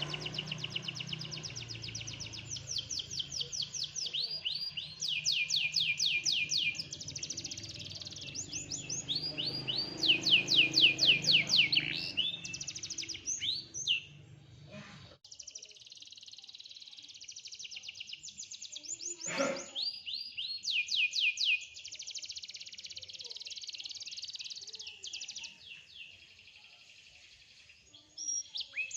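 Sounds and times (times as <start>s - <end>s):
canary singing: 0.0s - 14.4s, 15.3s - 28.9s.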